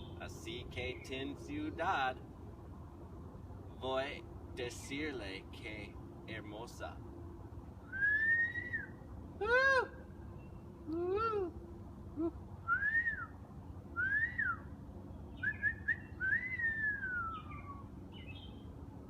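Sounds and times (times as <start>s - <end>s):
person whistling: 7.9s - 8.9s, 12.7s - 13.3s.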